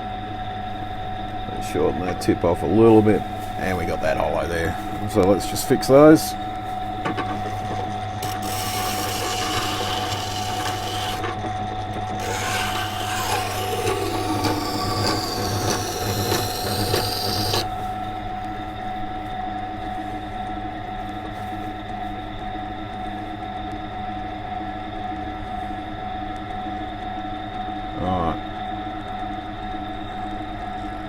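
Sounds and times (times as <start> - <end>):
grinder motor humming: 5.6 - 18.2
knife scraping on grinding stone: 6.7 - 17.8.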